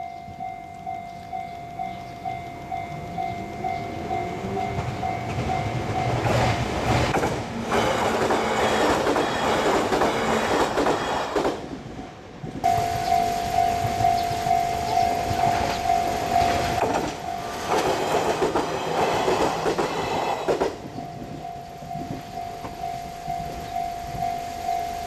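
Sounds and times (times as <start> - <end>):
level crossing bell ringing: 0.0 - 6.4, 12.6 - 17.7, 21.0 - 25.0
train wheel clatter: 0.0 - 25.0.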